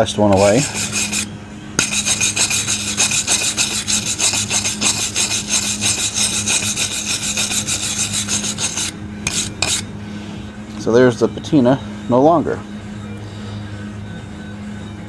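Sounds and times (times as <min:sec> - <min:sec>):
wire brush scrubbing metal: 0:00.0 - 0:09.9.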